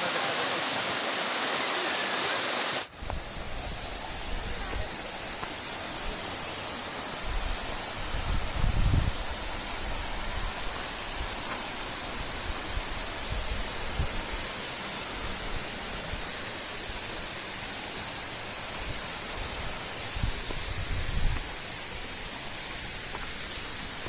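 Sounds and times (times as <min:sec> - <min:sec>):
flowing water rushing: 0:00.0 - 0:24.0.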